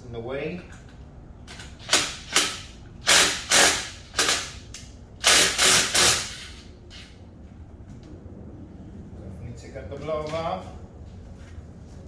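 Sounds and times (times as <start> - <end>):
ratchet wrench clicking: 1.5 - 7.0.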